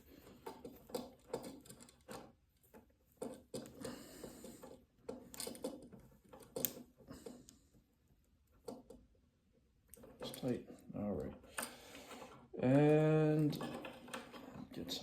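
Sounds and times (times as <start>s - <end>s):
rustling and scraping of wires: 0.0s - 9.2s, 9.8s - 15.0s
wire nut twisting clicks: 5.0s - 6.9s.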